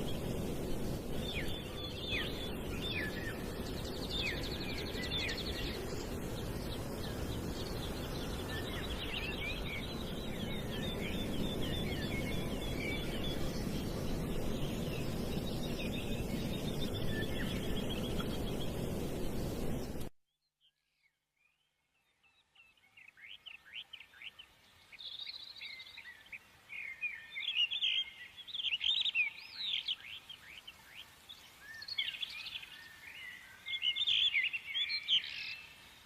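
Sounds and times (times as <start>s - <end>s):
small birds chirping: 0.0s - 36.0s.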